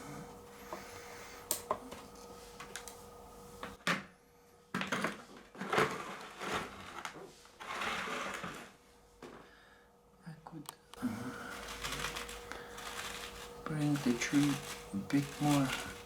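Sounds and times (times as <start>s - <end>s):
faint steady hum: 0.0s - 5.4s, 8.7s - 16.0s
rustling scraping strokes: 11.4s - 16.0s
soil being worked by hand: 11.5s - 16.0s.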